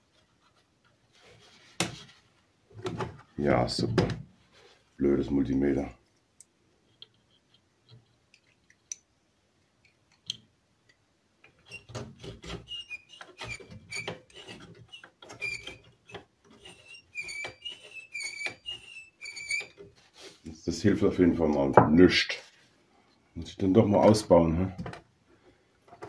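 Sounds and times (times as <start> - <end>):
high-pitched metal squeaks: 11.6 - 19.8.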